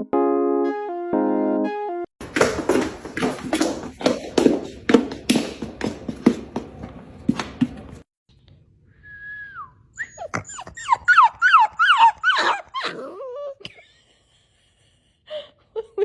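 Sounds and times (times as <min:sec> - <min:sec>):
music: 0:00.0 - 0:02.1
dog whining and yelping: 0:10.0 - 0:13.7.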